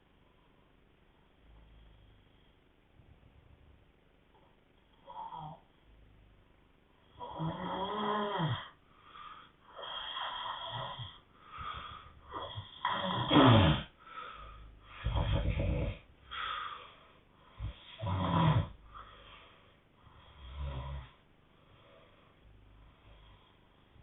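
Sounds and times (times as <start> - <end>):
people snoring: 7.2 - 8.8, 9.7 - 16.6, 17.5 - 18.9, 20.2 - 21.2.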